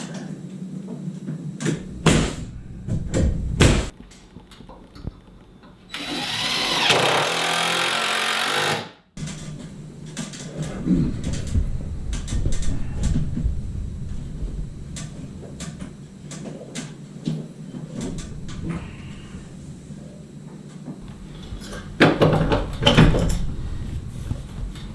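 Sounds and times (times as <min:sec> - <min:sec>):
power tool motor spinning: 0:03.9 - 0:08.9.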